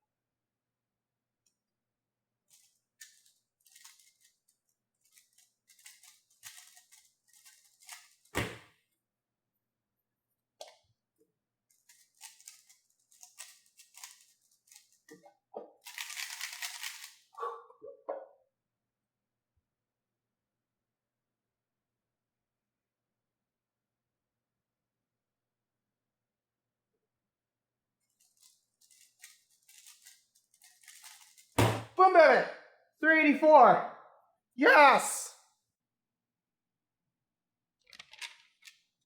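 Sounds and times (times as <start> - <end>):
puzzle cube clicking and rattling: 2.5 - 4.4, 5.0 - 8.3, 11.7 - 15.1, 15.8 - 17.3, 28.2 - 31.6, 37.9 - 38.7
sharp knock: 31.6 - 32.0.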